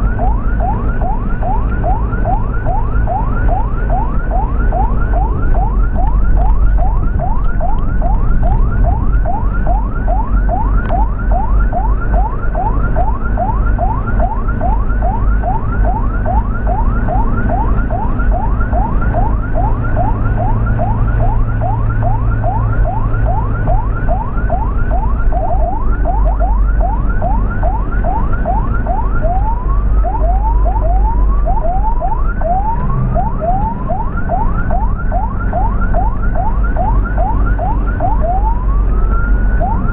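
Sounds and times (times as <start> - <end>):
low rumble: 0.0 - 12.7
ambulance siren yelping: 0.0 - 39.9.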